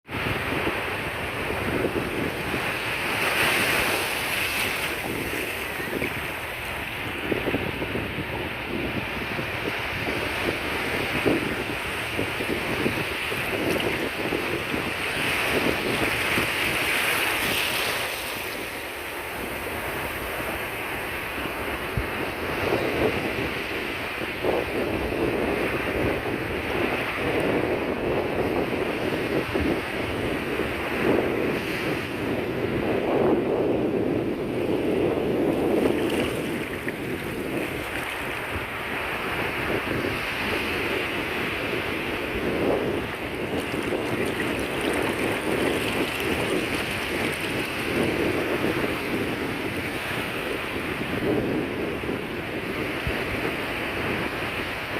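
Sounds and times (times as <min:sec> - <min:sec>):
wind buffeting microphone: 0:00.0 - 0:54.9
sea waves breaking on beach: 0:00.1 - 0:54.9.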